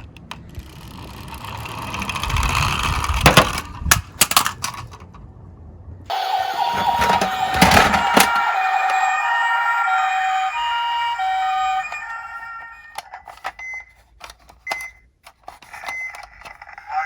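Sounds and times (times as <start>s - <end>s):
toy siren two-tone: 6.1s - 13.9s.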